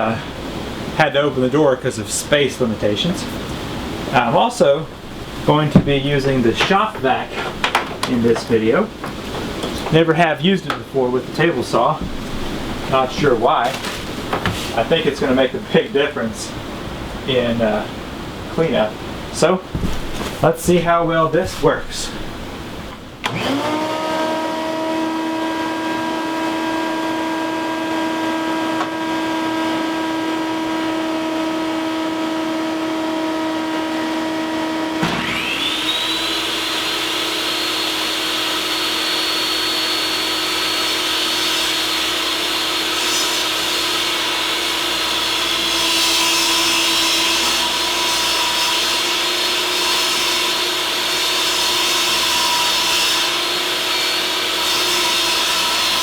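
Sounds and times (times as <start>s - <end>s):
shop vac whining: 0.0s - 18.0s, 18.6s - 56.0s
table saw motor whining: 23.2s - 56.0s.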